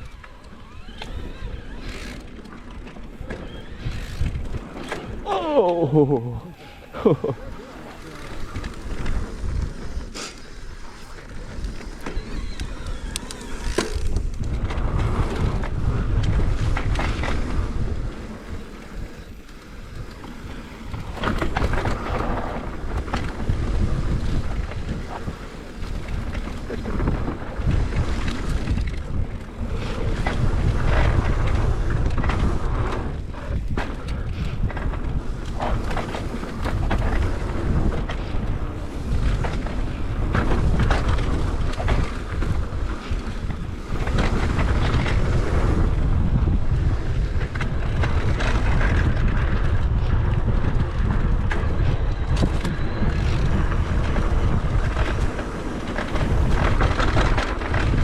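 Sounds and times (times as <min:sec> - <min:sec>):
wind rushing over microphone: 0:00.0 - 0:58.0.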